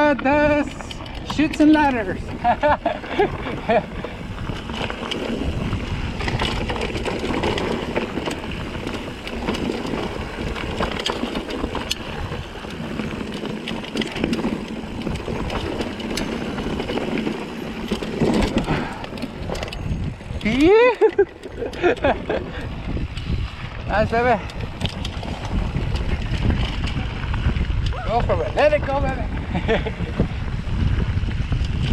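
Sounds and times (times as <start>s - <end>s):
tyres rolling on rock: 0.0s - 23.0s
bike clicks and rattles: 0.0s - 31.9s.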